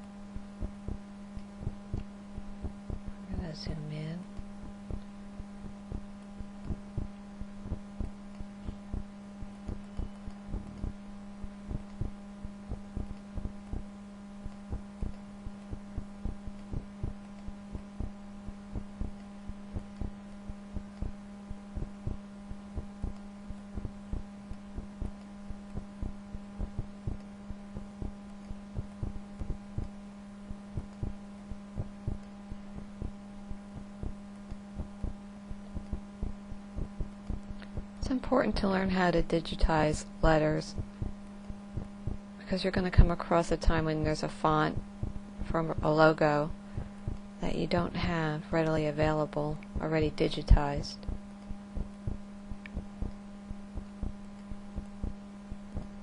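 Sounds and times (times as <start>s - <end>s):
electrical hum: 0.0s - 56.0s.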